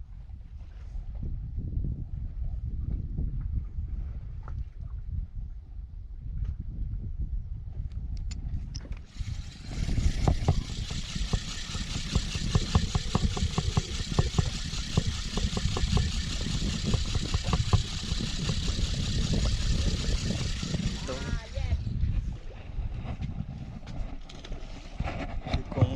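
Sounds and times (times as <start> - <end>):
boat engine running: 9.0 - 23.0
hull slapping water: 9.1 - 23.6
rush of wind and water: 13.9 - 23.6.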